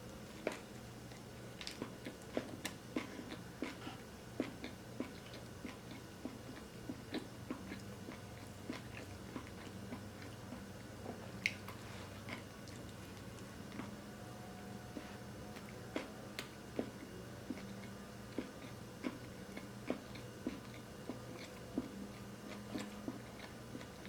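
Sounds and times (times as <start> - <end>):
chewing food: 0.0 - 24.0
low steady hum: 0.0 - 24.0.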